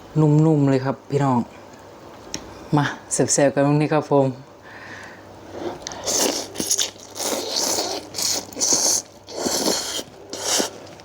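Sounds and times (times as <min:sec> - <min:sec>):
person biting and chewing food: 0:05.6 - 0:11.0.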